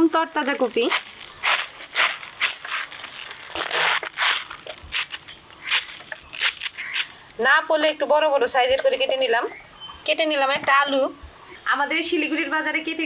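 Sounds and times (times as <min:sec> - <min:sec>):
blade cutting raw cabbage: 0:00.5 - 0:07.2.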